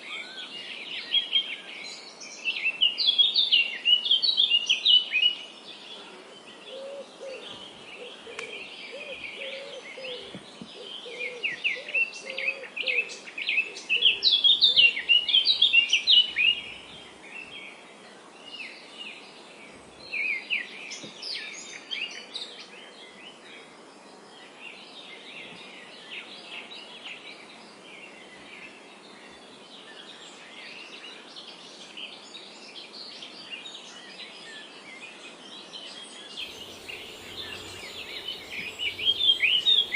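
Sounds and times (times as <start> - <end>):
steady background hiss: 0.0 - 39.9
small birds chirping and trilling: 36.0 - 39.9
lower repeated bird call: 36.4 - 39.9.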